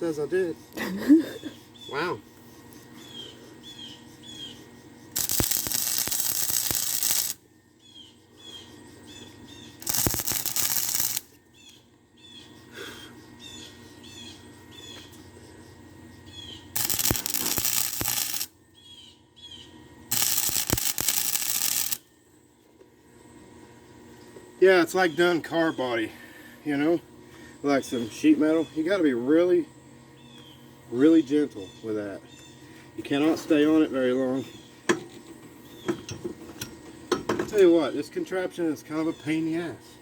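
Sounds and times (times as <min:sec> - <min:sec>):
arc welding crackling hiss: 0:05.1 - 0:07.4, 0:09.8 - 0:11.4, 0:16.8 - 0:18.6, 0:20.1 - 0:22.1.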